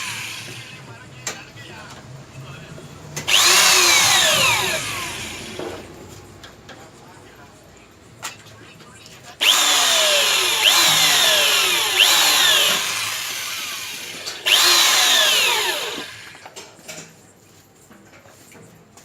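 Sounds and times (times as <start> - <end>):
electric drill whining: 0.0 - 0.8, 3.3 - 5.8, 9.4 - 16.5.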